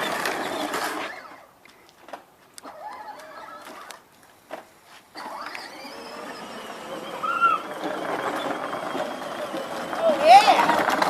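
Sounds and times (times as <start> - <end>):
plastic wheels rolling over dirt: 0.0 - 11.0
toy car electric motor: 5.2 - 11.0.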